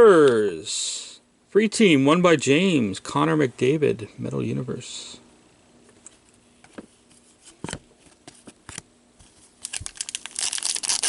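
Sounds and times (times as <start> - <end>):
foil wrapper crinkling and tearing: 9.6 - 11.0.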